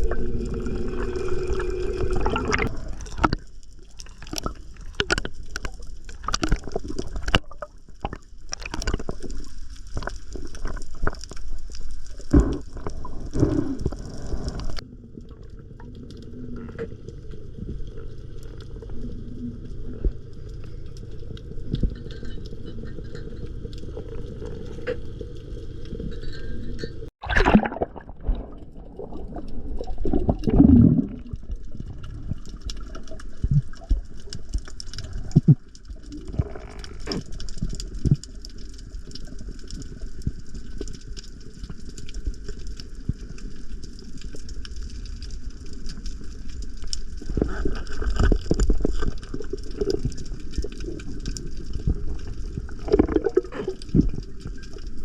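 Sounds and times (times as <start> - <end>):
muffled underwater rush: 0.0 - 9.4, 12.2 - 21.4, 27.2 - 38.0
water gurgling and bubbling: 0.0 - 11.2, 12.2 - 16.9, 27.2 - 38.2, 47.2 - 55.0.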